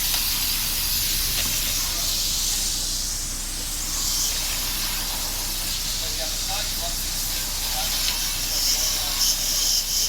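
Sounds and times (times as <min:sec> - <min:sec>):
water spraying: 0:03.8 - 0:10.0.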